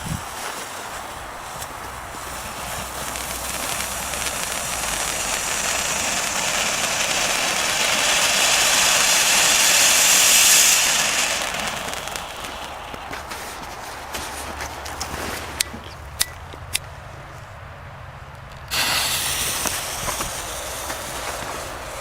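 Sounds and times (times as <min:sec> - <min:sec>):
firework fountain hissing: 0:00.0 - 0:15.6, 0:18.7 - 0:22.0.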